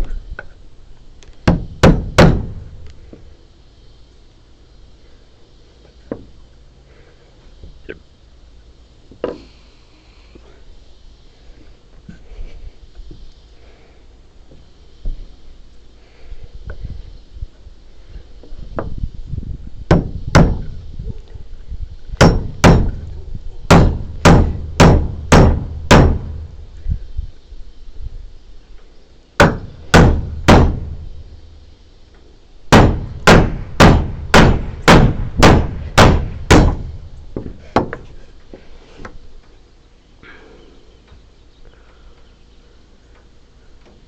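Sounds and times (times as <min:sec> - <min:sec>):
hammer striking timber: 0:01.5 - 0:02.6, 0:19.9 - 0:20.6, 0:22.2 - 0:23.0, 0:23.7 - 0:26.4, 0:29.4 - 0:31.0, 0:32.7 - 0:38.0.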